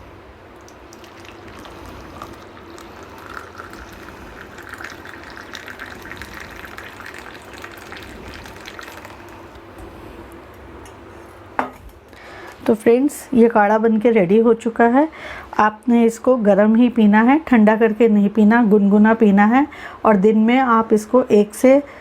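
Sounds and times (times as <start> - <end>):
liquid trickling into a cup: 0.6 - 10.4.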